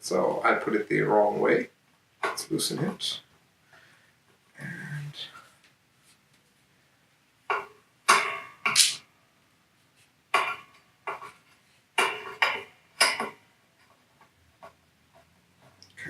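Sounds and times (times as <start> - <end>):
clamp knocks and rattles: 12.0 - 13.4.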